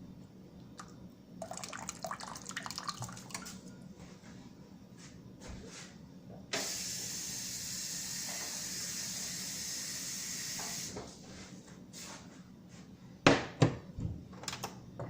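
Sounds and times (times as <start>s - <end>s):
liquid pouring into pot: 0.8s - 3.6s.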